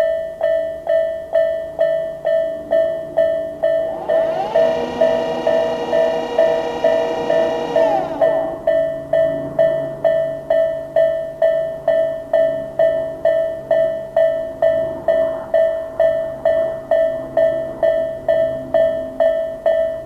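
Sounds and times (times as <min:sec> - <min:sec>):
electronic crossing warning bell: 0:00.0 - 0:20.0.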